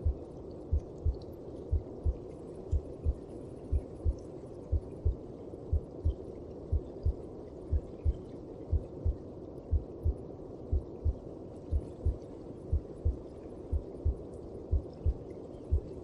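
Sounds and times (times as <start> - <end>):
heartbeat thumps: 0.0 - 5.2, 6.7 - 16.0.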